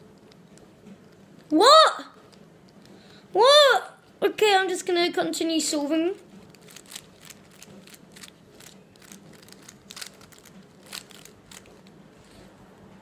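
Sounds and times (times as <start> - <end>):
plastic cube layers clicking: 6.5 - 12.0.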